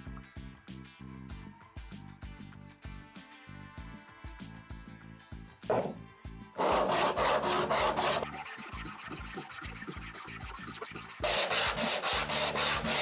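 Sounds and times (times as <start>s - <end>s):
wood being sanded by hand: 6.6s - 13.0s.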